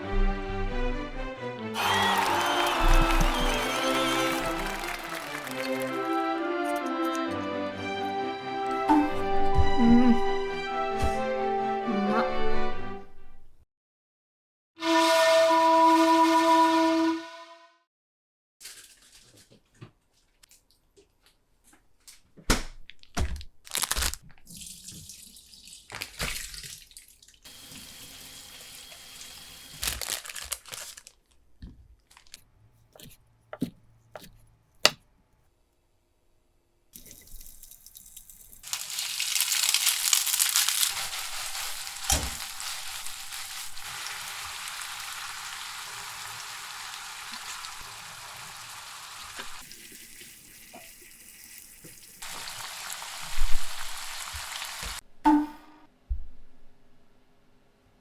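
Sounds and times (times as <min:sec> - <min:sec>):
utensils and cookware clicking: 0:03.5 - 0:07.5
food sizzling in a frying pan: 0:38.4 - 0:55.0.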